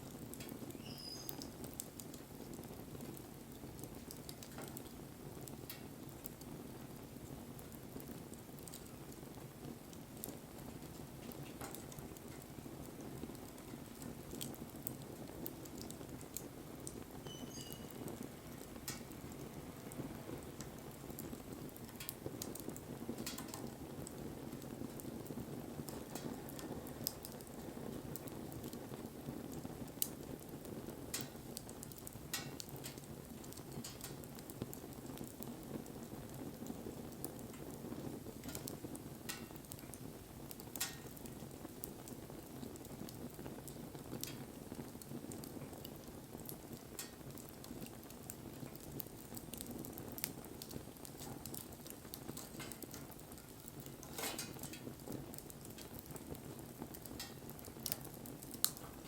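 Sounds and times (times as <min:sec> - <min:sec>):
wood fire crackling: 0:00.0 - 0:59.0
high-pitched chirp: 0:17.3 - 0:17.9.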